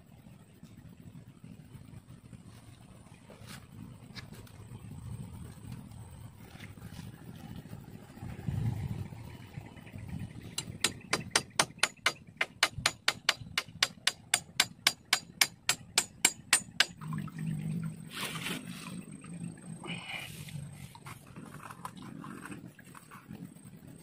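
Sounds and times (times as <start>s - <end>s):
tool knocking rapidly: 10.6s - 17.0s.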